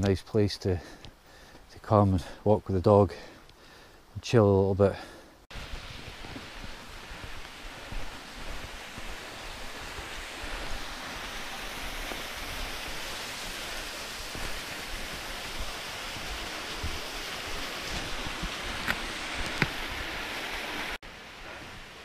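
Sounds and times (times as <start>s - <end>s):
rushing water: 5.5s - 22.0s.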